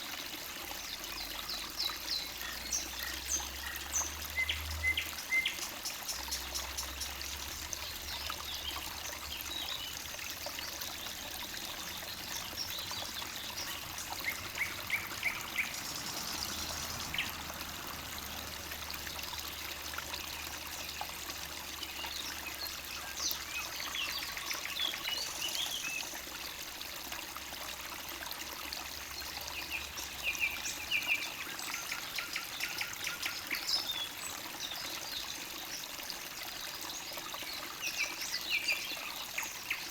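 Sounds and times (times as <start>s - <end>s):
stream trickling and babbling: 0.0s - 39.9s
songbirds chirping: 0.8s - 26.6s.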